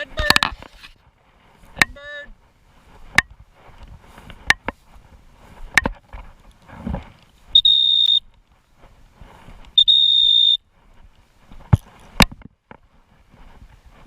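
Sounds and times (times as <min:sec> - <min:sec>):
dog whistle blasts: 0:07.6 - 0:08.2, 0:09.8 - 0:10.6.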